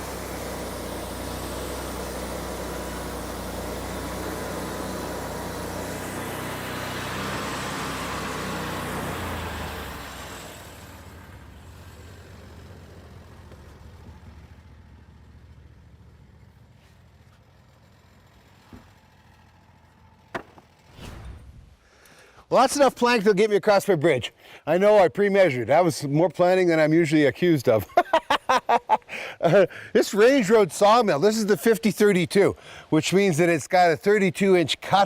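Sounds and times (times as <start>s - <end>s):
sawmill engine running: 0.0s - 25.1s, 25.8s - 35.0s.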